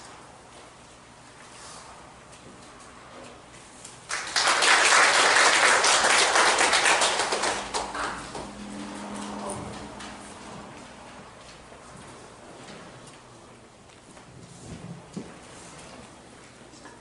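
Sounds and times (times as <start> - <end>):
audience clapping: 4.1 - 8.6.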